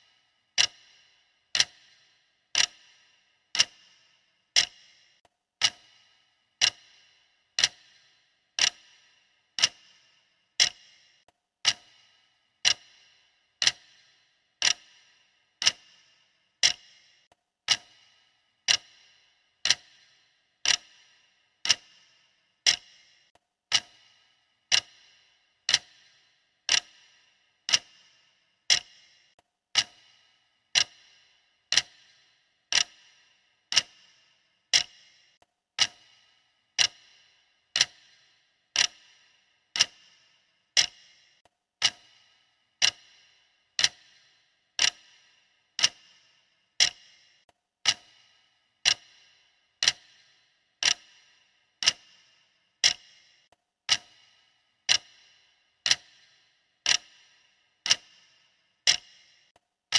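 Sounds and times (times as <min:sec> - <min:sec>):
clock-style timer ticking: 0:00.0 - 0:59.9.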